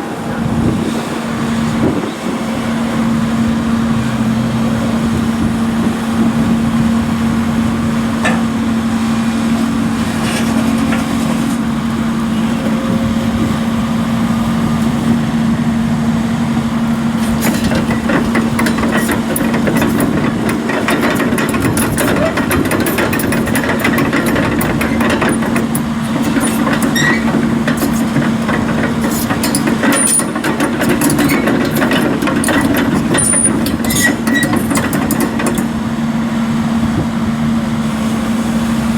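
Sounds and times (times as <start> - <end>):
excavator diesel engine humming: 0.0 - 38.9
short clicks and knocks: 17.2 - 35.7.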